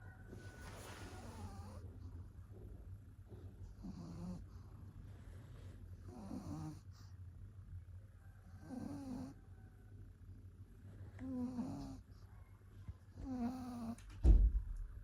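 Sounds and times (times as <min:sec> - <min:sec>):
dog snoring: 0:01.1 - 0:01.9, 0:03.6 - 0:04.8, 0:06.0 - 0:07.2, 0:08.6 - 0:09.4, 0:11.2 - 0:12.2, 0:13.1 - 0:14.1.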